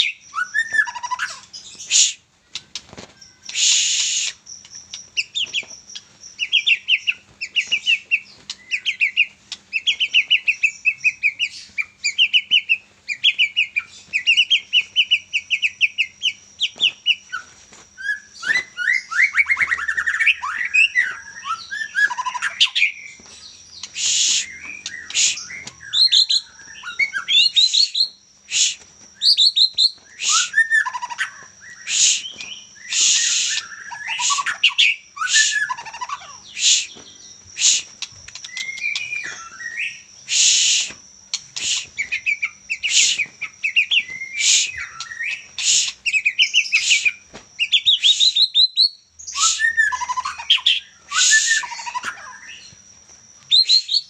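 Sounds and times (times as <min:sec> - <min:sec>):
bird singing: 0:00.0 - 0:54.0
bird harsh rasping bursts: 0:23.8 - 0:25.6, 0:40.2 - 0:43.3, 0:44.3 - 0:46.2.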